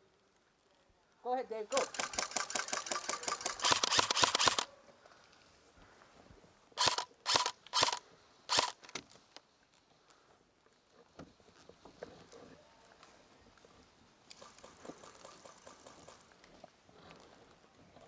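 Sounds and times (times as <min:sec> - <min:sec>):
airsoft gun firing: 0:01.8 - 0:04.7, 0:06.8 - 0:08.8.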